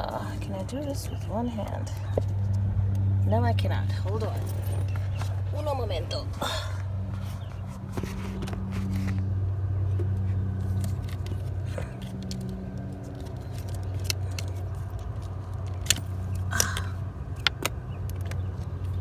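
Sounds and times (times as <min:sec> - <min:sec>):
vehicle engine idling: 0:00.0 - 0:19.0
parts clicking and rattling: 0:03.8 - 0:19.0.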